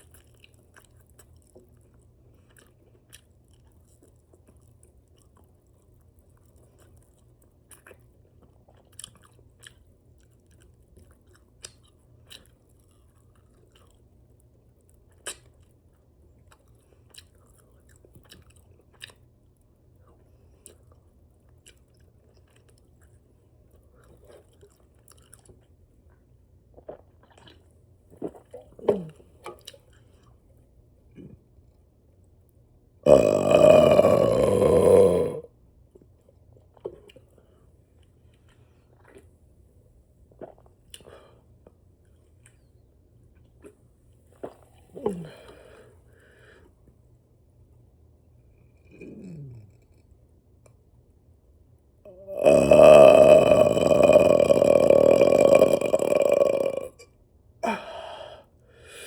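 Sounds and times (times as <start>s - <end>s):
open-mouthed chewing: 0.0s - 15.8s, 16.4s - 19.3s
person burping loudly: 33.0s - 35.5s, 52.1s - 57.0s.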